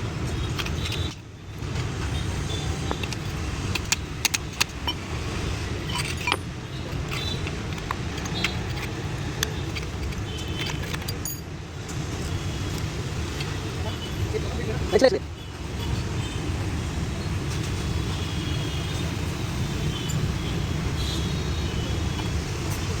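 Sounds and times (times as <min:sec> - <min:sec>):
road traffic rumble: 0:00.0 - 0:23.0
metal tools clinking: 0:00.3 - 0:01.2, 0:02.5 - 0:13.6.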